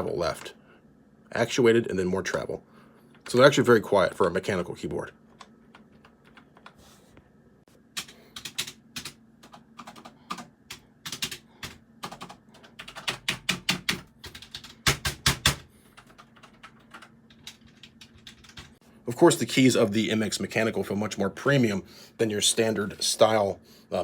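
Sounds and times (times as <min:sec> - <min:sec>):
typing on keyboard: 0:08.0 - 0:18.8.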